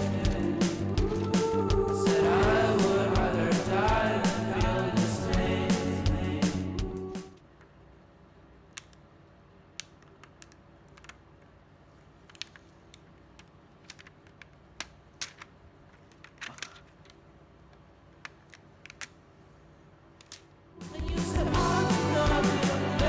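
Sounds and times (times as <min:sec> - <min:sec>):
small hard parts clicking: 0:12.2 - 0:17.2, 0:18.2 - 0:19.2.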